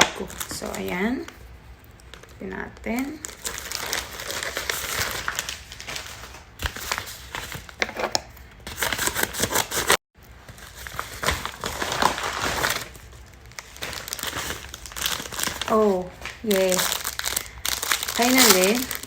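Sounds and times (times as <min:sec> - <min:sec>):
packaging crinkling: 0:03.1 - 0:19.0.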